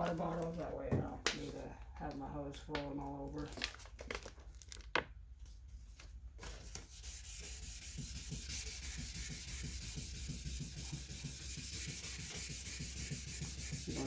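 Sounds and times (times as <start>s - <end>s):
sandpaper rubbing plastic: 6.5s - 14.0s.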